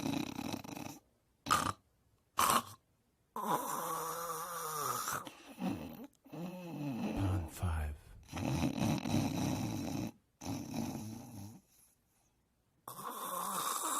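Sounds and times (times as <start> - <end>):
person snoring: 3.4 - 11.6, 12.9 - 13.9.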